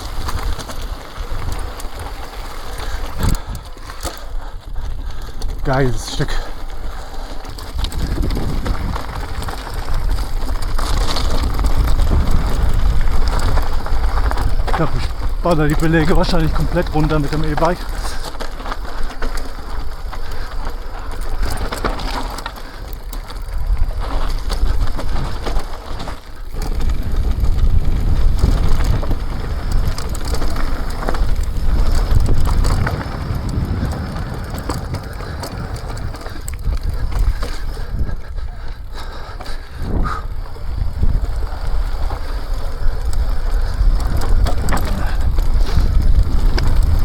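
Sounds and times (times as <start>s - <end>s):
bike rattling: 0.0s - 47.0s
tyres crunching over gravel: 0.0s - 47.0s
wind on microphone: 6.8s - 21.7s, 26.5s - 47.0s.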